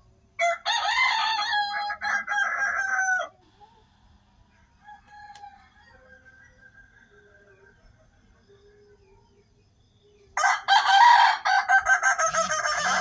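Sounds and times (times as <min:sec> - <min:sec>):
faint background crowing: 0:00.0 - 0:13.0
rooster crowing: 0:00.4 - 0:03.4, 0:04.8 - 0:06.8, 0:10.4 - 0:13.0.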